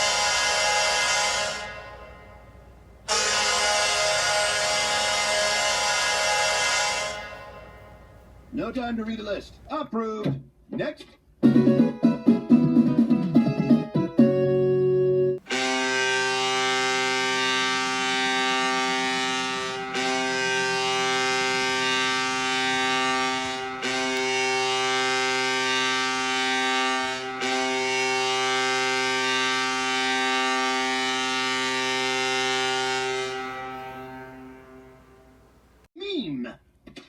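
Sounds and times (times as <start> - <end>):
goal horn blasts: 0.0 - 8.3, 15.4 - 35.6.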